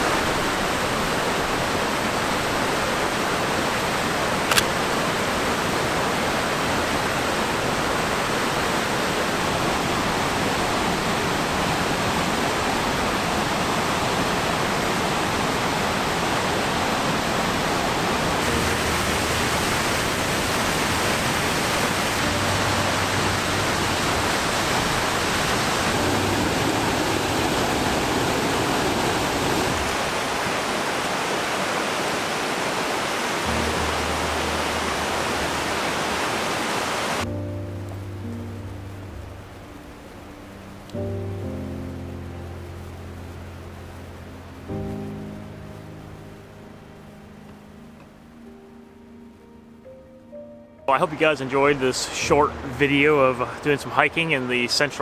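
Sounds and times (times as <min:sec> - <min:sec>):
large waterfall rushing: 0:18.1 - 0:37.3.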